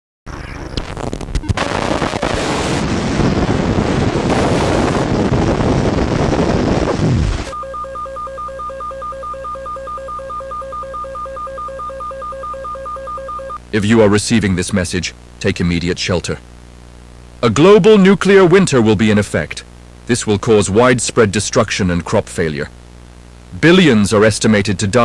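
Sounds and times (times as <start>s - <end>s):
two-tone electronic alert tone: 7.5s - 13.6s.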